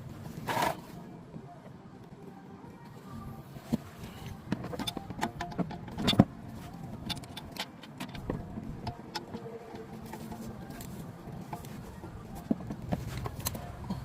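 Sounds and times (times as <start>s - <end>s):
low steady hum: 0.0s - 14.0s
hand tools and metal parts clicking: 3.7s - 14.0s.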